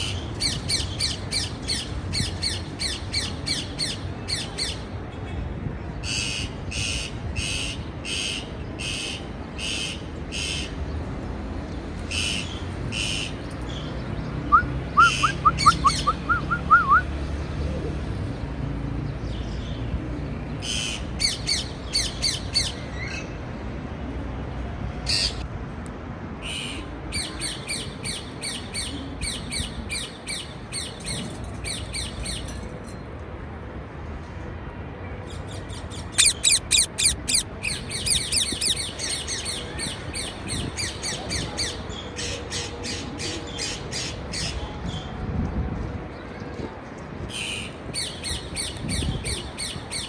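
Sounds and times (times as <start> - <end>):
parakeet sharp chirps: 36.2 - 38.8
parakeet squawk: 36.2 - 38.8.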